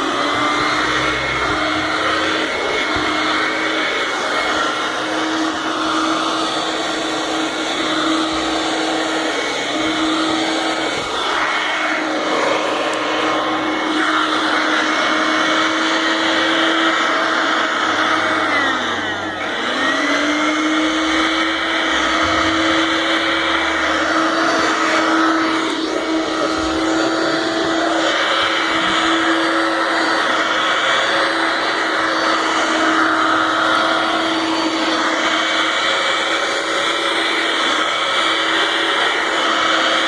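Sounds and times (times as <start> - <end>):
canister vacuum running: 0.0 - 40.0.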